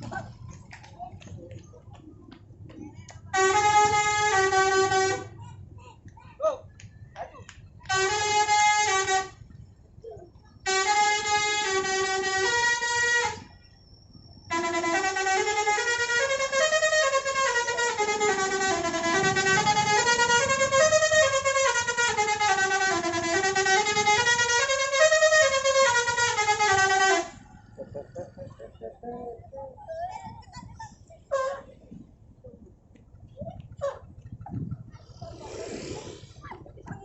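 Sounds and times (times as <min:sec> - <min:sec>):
multi-tone bus horn playing melodies: 0:03.2 - 0:05.4, 0:07.8 - 0:09.6, 0:10.6 - 0:13.6, 0:14.4 - 0:28.5.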